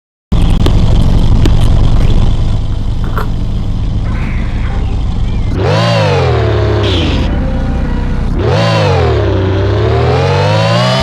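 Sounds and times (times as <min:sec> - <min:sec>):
deep car rumble: 0:00.3 - 0:11.0
sweeping pitched tone: 0:03.9 - 0:11.0.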